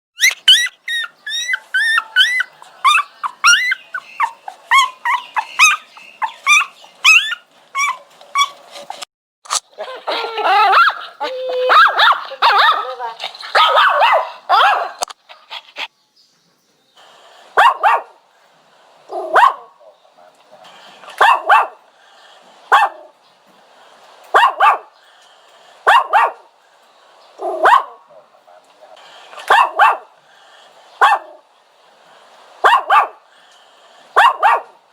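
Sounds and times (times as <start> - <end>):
dog whining: 0.2 - 9.0, 9.8 - 12.9.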